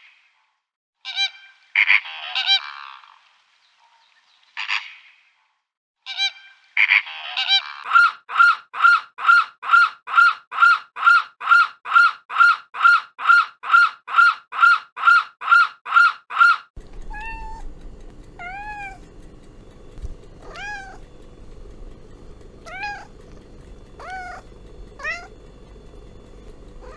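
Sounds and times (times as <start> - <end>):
rising-and-falling animal calls: 1.1 - 3.2, 6.1 - 17.6, 22.6 - 23.1, 24.0 - 25.3
fast run of high animal calls: 6.1 - 17.6, 22.6 - 23.1, 24.0 - 24.4, 25.0 - 25.3.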